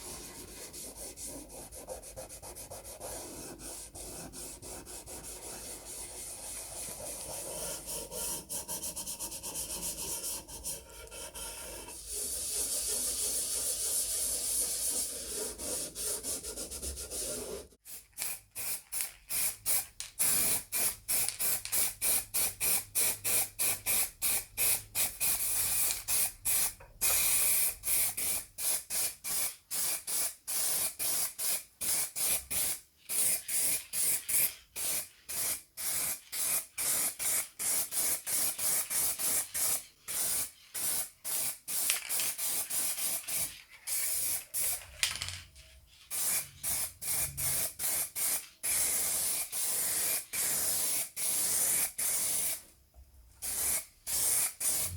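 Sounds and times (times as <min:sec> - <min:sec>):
short bursts of hissing air spray: 0:17.8 - 0:44.8, 0:46.1 - 0:52.6, 0:53.4 - 0:54.9.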